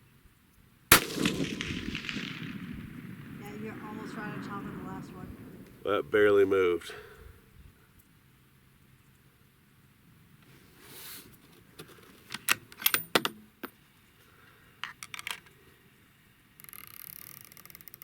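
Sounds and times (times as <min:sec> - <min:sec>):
rifle metallic clacks: 0:00.9 - 0:03.4.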